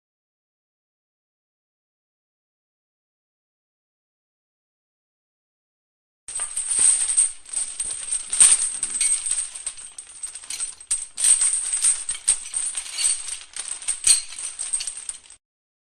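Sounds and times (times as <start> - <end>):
metal chain rubbing and jangling: 6.3 - 15.4.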